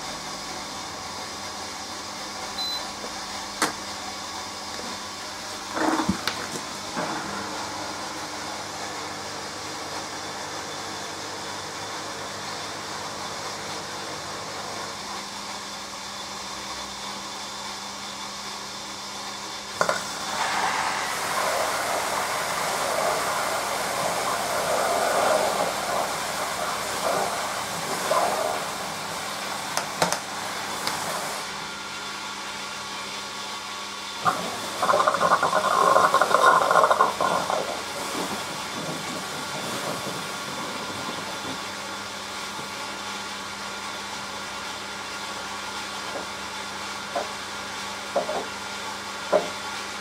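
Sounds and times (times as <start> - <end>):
washing machine hum: 0.0 - 50.0
water rushing and splashing: 20.2 - 29.6.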